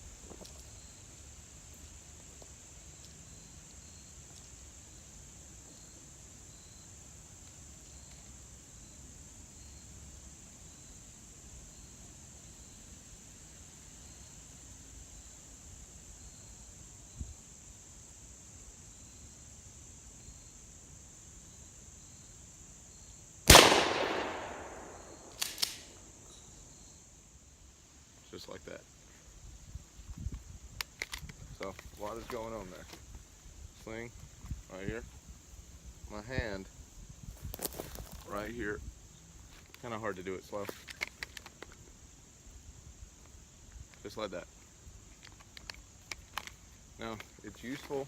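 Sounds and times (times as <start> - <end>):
crickets chirping: 0.0 - 48.0
metallic clicks of gun action: 23.5 - 25.9, 30.8 - 31.4, 45.2 - 46.6
shotgun blast echoing: 23.5 - 26.0.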